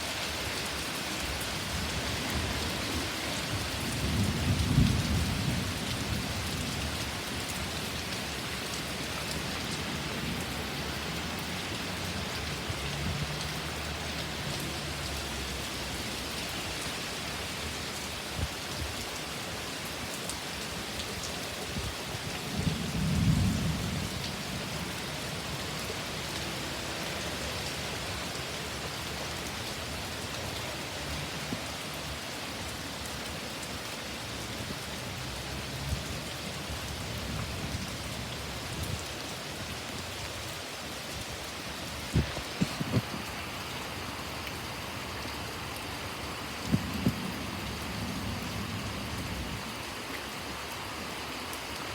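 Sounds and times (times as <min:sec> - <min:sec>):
heavy rain pouring: 0:00.0 - 0:51.9
low thunder rumble: 0:03.8 - 0:06.4, 0:46.6 - 0:49.7.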